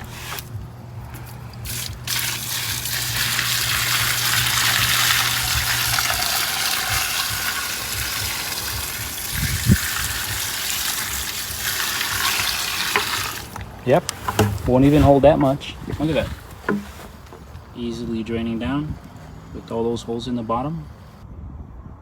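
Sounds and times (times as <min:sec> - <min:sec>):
water gushing from hydrant: 0:01.2 - 0:17.7.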